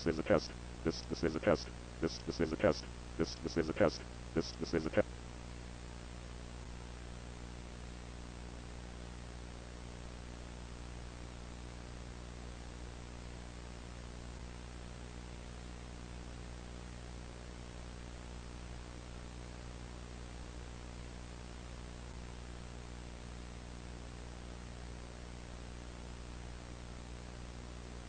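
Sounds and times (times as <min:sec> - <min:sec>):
constant hiss: 0:00.0 - 0:05.2
electrical hum: 0:00.0 - 0:07.8.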